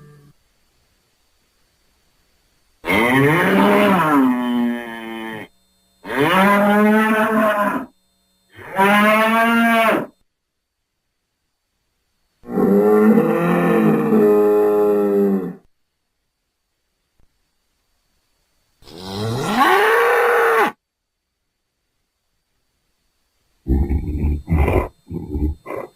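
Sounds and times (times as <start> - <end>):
bull mooing: 2.8 - 7.9, 8.6 - 10.1, 12.4 - 15.7.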